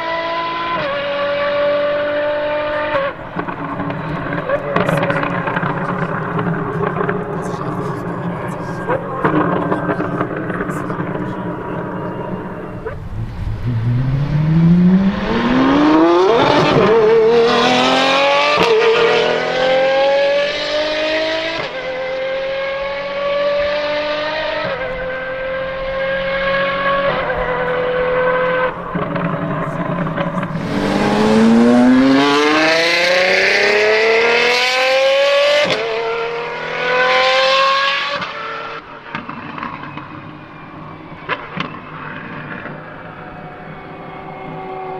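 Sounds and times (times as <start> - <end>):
sports car engine accelerating: 0.0 - 44.9.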